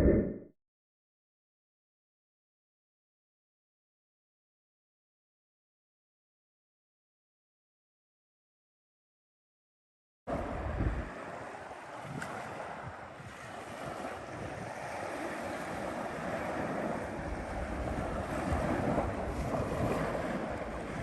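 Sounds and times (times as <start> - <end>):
sea waves washing on shore: 10.3 - 21.0
wind buffeting microphone: 10.3 - 21.0.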